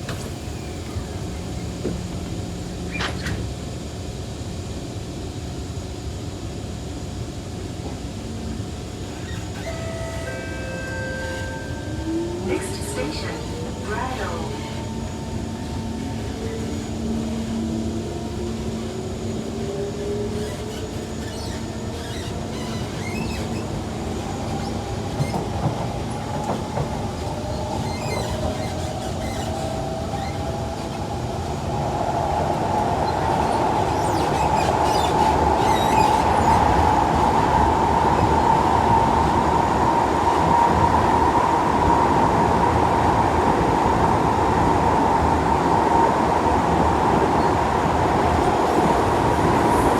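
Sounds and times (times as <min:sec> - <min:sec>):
wheel-on-rail rush: 0:12.1 - 0:49.9.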